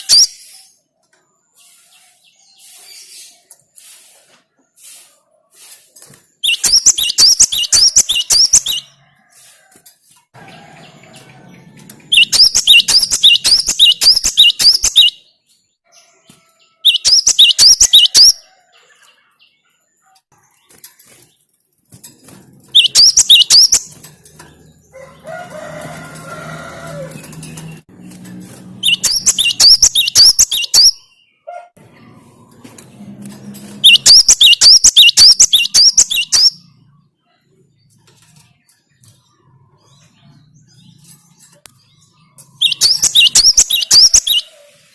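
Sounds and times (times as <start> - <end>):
bird singing sharp high notes: 12.1 - 15.3, 22.8 - 23.9, 28.8 - 31.2, 33.8 - 36.7, 42.6 - 44.5.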